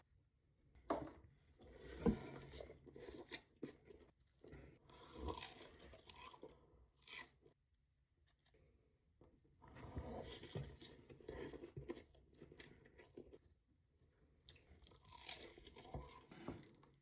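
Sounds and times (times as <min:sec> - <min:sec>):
person chewing a burger: 0:02.8 - 0:07.6, 0:10.2 - 0:13.6, 0:14.3 - 0:17.0.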